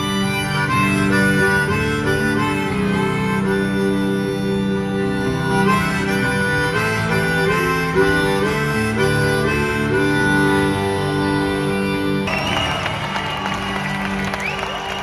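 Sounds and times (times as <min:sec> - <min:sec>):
harmonica melody: 0:00.0 - 0:15.0.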